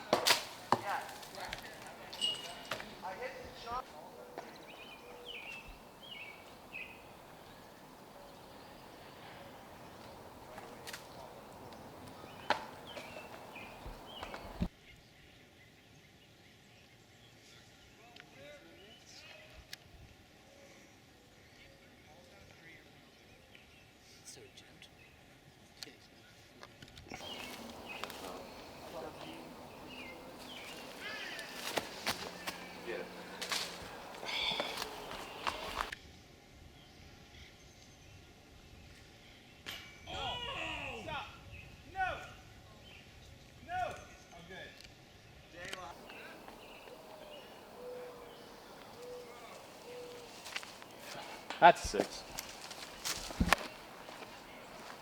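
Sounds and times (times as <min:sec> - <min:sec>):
faint voices: 0:00.0 - 0:14.7, 0:27.2 - 0:35.9, 0:45.9 - 0:55.0
high bird chirps: 0:02.0 - 0:03.2, 0:04.4 - 0:14.7, 0:27.2 - 0:35.9, 0:46.0 - 0:51.6.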